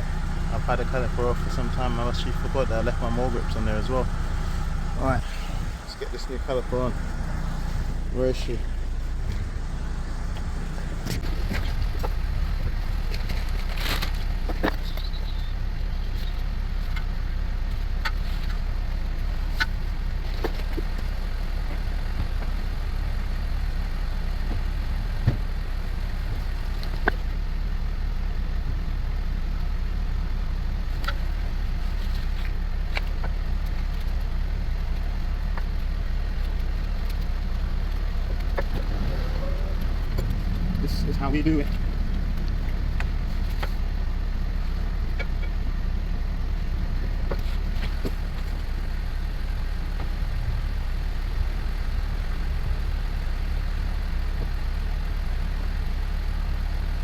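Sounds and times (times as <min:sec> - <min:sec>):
steady low rumble: 0:00.0 - 0:14.5, 0:27.6 - 0:56.2.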